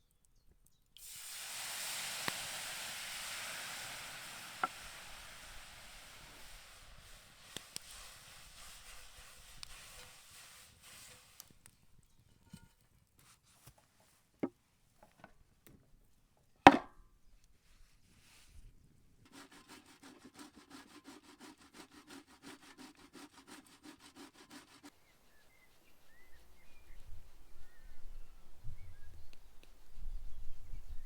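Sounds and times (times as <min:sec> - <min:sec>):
sharp knocks: 0:16.7 - 0:16.9
kitchen tool scraping rhythmically: 0:19.3 - 0:24.9.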